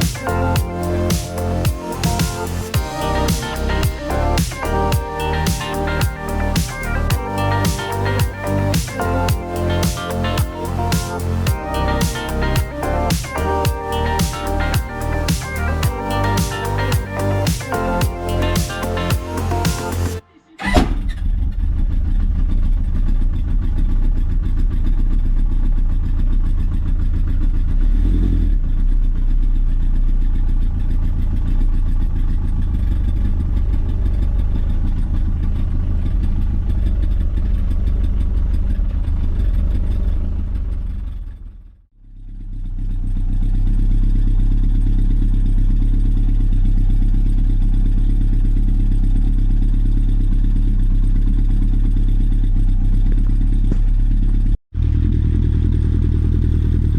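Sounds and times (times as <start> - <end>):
motorcycle engine running: 21.2 - 41.5, 42.2 - 56.9.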